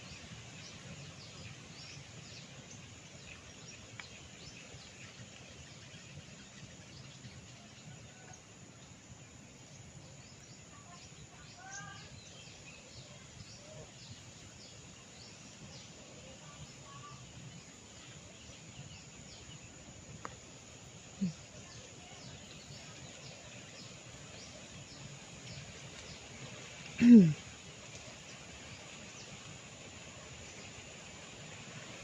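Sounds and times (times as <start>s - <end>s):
small birds chirping: 9.2s - 32.0s.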